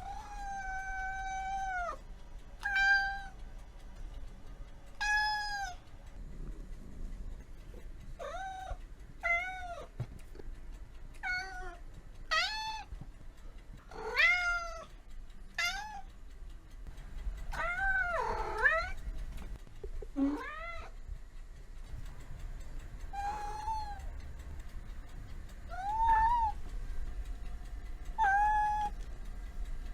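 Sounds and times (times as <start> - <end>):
cat meowing: 0.0 - 2.0, 2.6 - 3.4, 5.0 - 5.9, 8.2 - 9.9, 11.2 - 12.9, 13.9 - 14.9, 15.5 - 16.1, 17.5 - 19.0, 20.2 - 21.0, 23.1 - 24.1, 25.7 - 26.6, 28.2 - 29.0.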